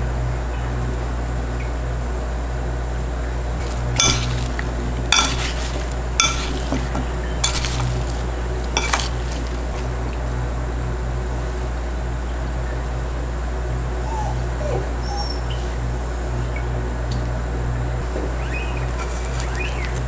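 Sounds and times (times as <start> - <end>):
dishes and utensils clinking: 3.6 - 10.3, 18.8 - 20.0.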